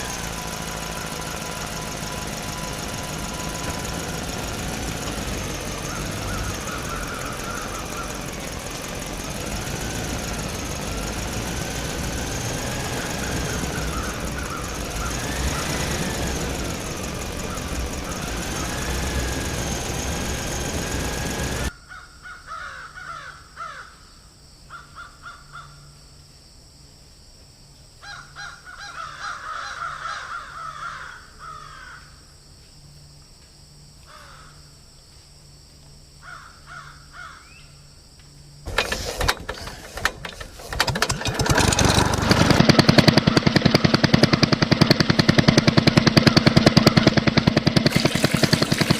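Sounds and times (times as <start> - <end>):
small engine running: 0.0 - 21.8, 38.6 - 48.9
crows cawing: 5.8 - 8.5, 13.9 - 15.6, 21.9 - 24.0, 24.7 - 25.9, 28.0 - 32.2, 34.1 - 34.6, 36.2 - 37.6.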